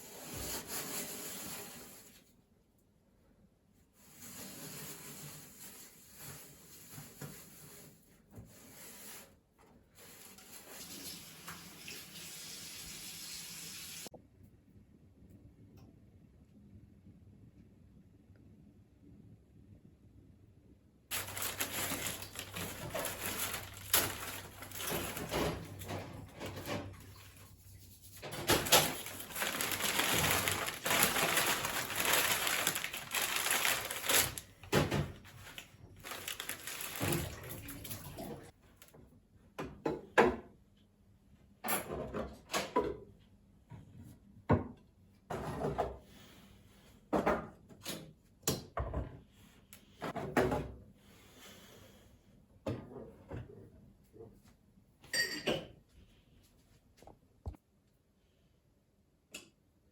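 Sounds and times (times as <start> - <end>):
objects knocking and clattering: 21.1 - 27.2, 28.2 - 33.6.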